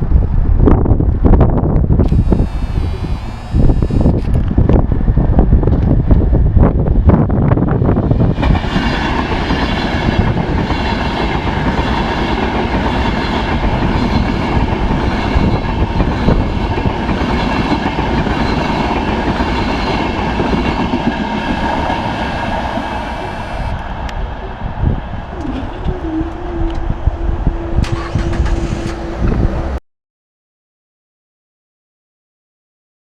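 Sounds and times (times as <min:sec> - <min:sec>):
whining train tones: 0:02.0 - 0:04.5, 0:08.0 - 0:29.8
train wheels rushing on rails: 0:02.0 - 0:29.8.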